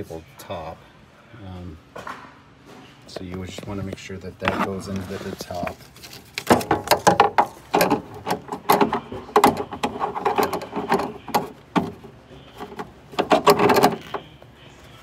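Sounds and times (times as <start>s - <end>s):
metal clanks and scrapes: 6.4s - 14.3s.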